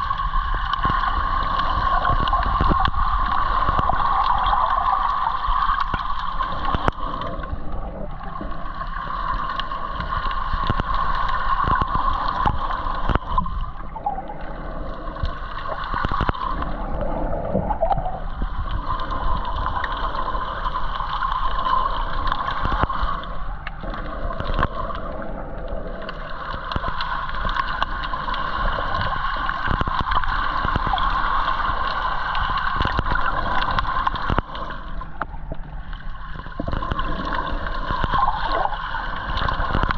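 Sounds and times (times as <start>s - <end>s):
muffled underwater rush: 0.0s - 39.9s
water gurgling: 0.0s - 39.9s.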